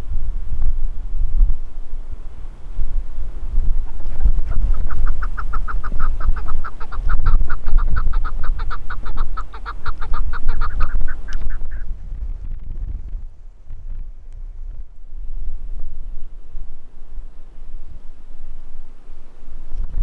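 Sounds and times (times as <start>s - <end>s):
wind buffeting microphone: 0.0s - 18.9s, 19.5s - 20.0s
bird clucking calls: 3.8s - 11.9s.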